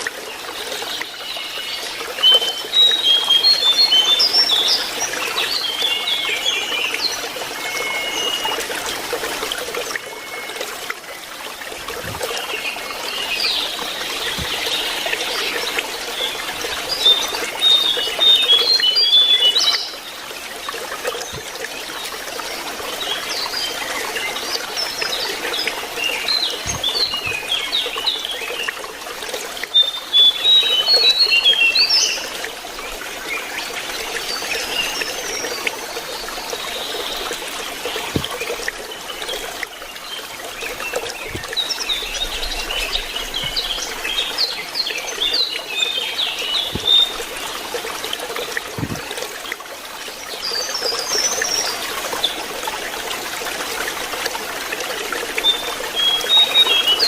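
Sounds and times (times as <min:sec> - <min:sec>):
trickle of running water: 0:00.0 - 0:57.0
bird twittering song: 0:22.9 - 0:28.8.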